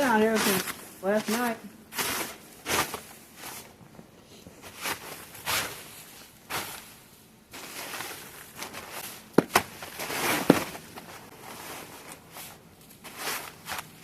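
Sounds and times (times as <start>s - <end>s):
footsteps crunching in snow: 0.0s - 3.8s, 4.6s - 14.0s.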